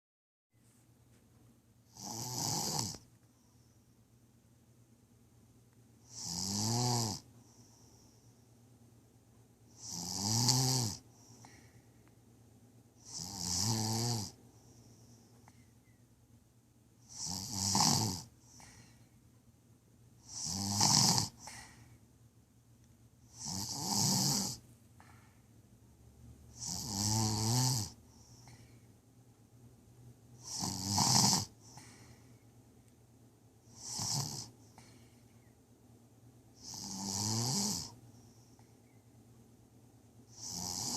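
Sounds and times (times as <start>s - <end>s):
snoring: 1.9s - 3.1s, 6.0s - 8.0s, 9.7s - 11.7s, 13.0s - 14.4s, 17.0s - 18.9s, 20.2s - 21.8s, 23.3s - 24.6s, 26.5s - 28.6s, 30.4s - 32.1s, 33.6s - 35.0s, 36.6s - 38.0s, 40.3s - 40.9s.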